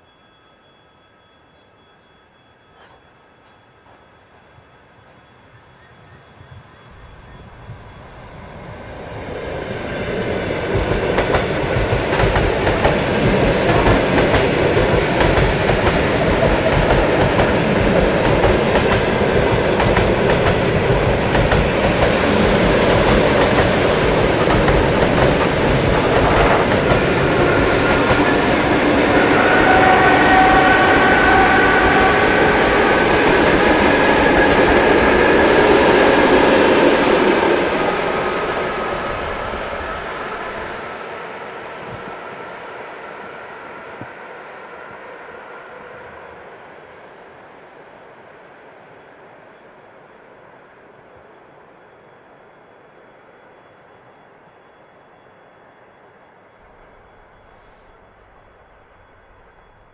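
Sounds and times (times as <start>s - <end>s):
train motor whine: 7.0s - 40.8s
train wheels clattering on rails: 9.8s - 40.8s.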